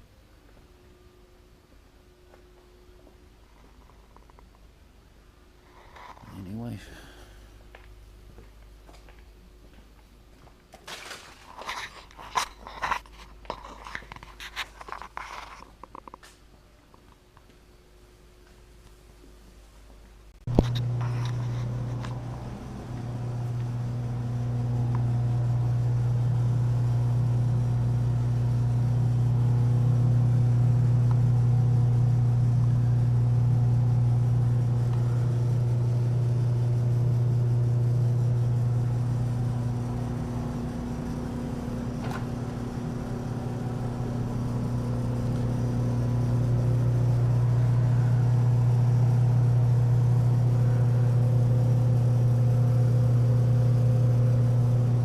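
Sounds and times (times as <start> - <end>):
motor low hum: 20.3 - 55.0.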